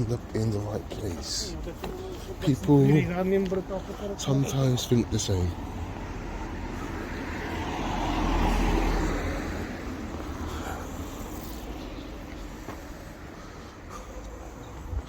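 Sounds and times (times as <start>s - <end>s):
vehicle passing by: 3.6s - 15.0s.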